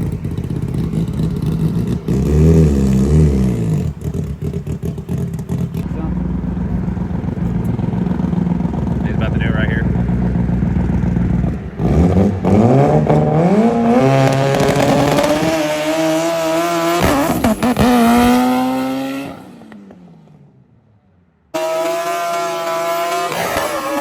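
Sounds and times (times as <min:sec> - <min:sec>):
engine running steadily: 0:00.0 - 0:15.6
car accelerating hard: 0:00.0 - 0:20.4, 0:21.5 - 0:24.0.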